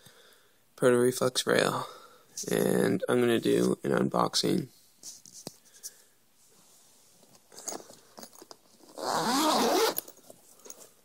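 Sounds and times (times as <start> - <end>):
zipper pulled open: 8.8 - 10.2.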